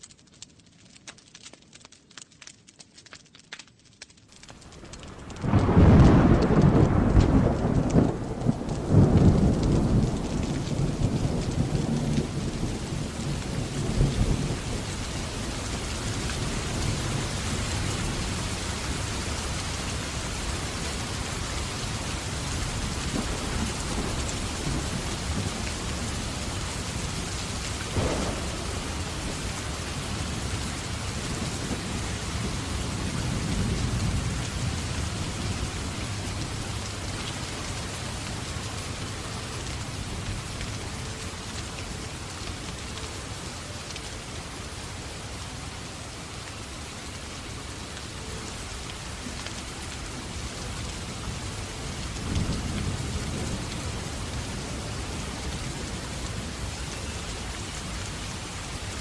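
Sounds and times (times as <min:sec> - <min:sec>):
heavy rain: 0:00.0 - 0:59.0
thunder rumbling: 0:04.7 - 0:41.2.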